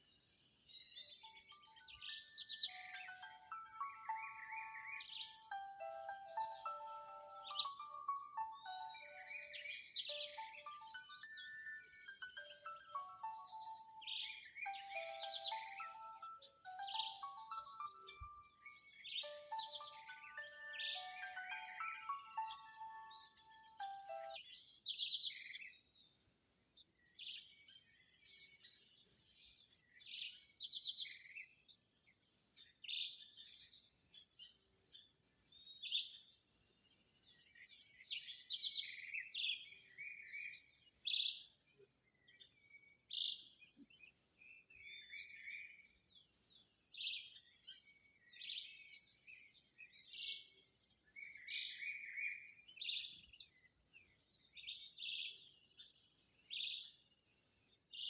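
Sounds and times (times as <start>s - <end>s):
insect chorus drone: 0.0s - 24.8s, 27.8s - 58.0s
birds calling and trilling: 0.0s - 25.8s.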